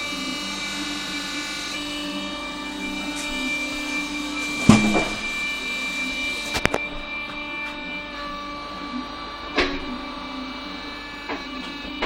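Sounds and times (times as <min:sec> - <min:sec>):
tyre changer motor whining: 0:00.0 - 0:12.0
loud metal clank: 0:04.6 - 0:05.3.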